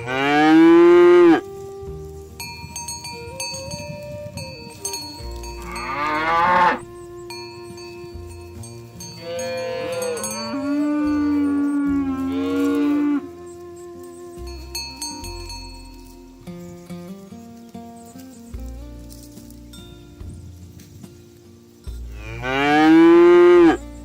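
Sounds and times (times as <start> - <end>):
cattle mooing: 0.0 - 1.5, 4.8 - 6.9, 9.2 - 13.8, 22.2 - 23.8.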